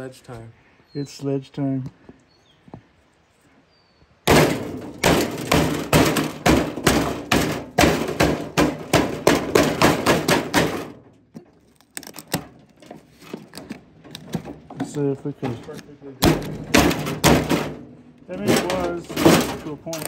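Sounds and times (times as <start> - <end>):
sledgehammer smashing appliance: 4.3 - 11.0, 16.2 - 20.0.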